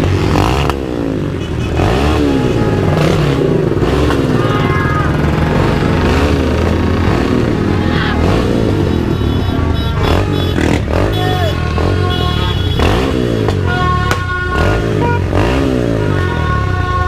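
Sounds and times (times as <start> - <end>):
motorcycle engine revving: 0.0 - 16.9
motorcycle idling: 2.3 - 13.6.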